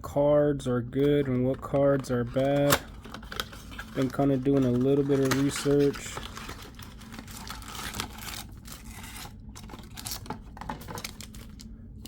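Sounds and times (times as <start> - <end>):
hands tearing plastic wrapping: 2.3 - 11.7.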